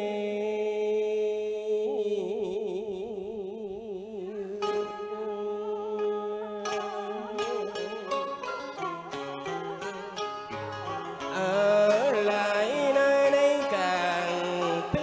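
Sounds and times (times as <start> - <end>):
plucked strings with wavering vibrato: 4.6 - 15.0.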